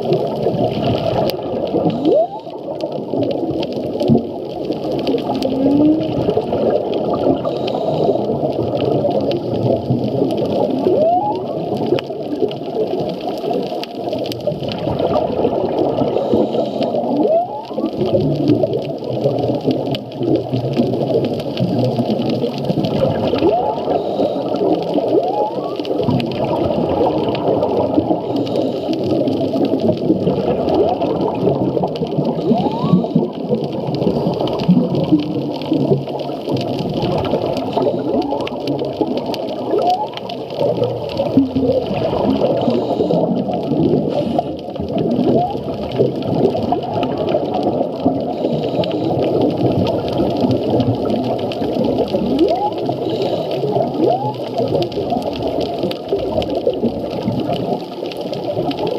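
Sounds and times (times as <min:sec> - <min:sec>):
whale song calls: 0:01.9 - 0:02.6, 0:10.8 - 0:11.6, 0:17.1 - 0:18.0, 0:23.4 - 0:26.0, 0:32.4 - 0:33.4, 0:39.7 - 0:40.2, 0:45.2 - 0:45.6, 0:52.4 - 0:54.6
underwater hiss: 0:07.0 - 0:08.8, 0:15.7 - 0:17.8, 0:23.8 - 0:25.9, 0:27.5 - 0:29.7, 0:41.8 - 0:44.8, 0:47.4 - 0:50.4, 0:52.3 - 0:54.1.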